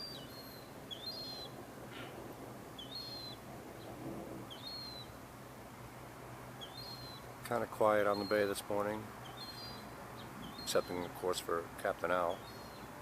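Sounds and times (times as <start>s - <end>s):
bird whistled call: 0.0s - 2.1s, 2.8s - 3.4s, 4.5s - 5.1s, 6.6s - 7.2s, 8.1s - 8.5s
low background hum: 0.0s - 13.0s.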